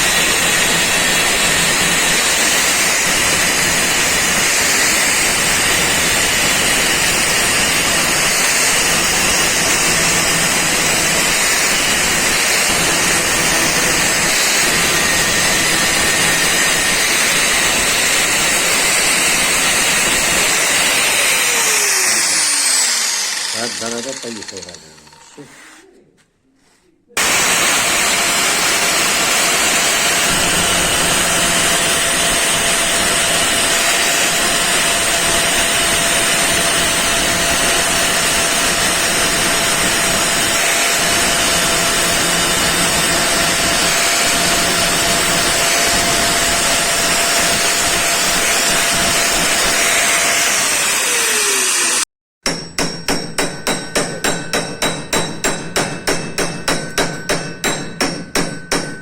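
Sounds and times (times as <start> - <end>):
power tool grinding: 0.0 - 25.8, 27.2 - 52.1
hammer striking metal: 52.4 - 59.0.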